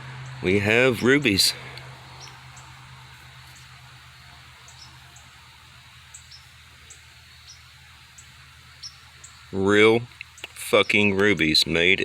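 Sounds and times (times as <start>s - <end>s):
crickets chirping: 0.0s - 11.9s.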